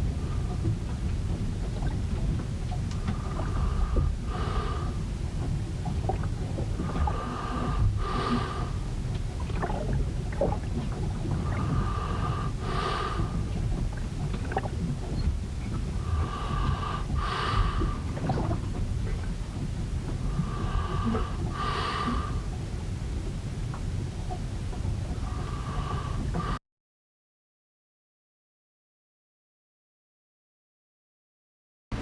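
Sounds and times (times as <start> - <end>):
rumble of wind and water: 0.0 - 26.6
ship creaking groan: 1.8 - 24.0.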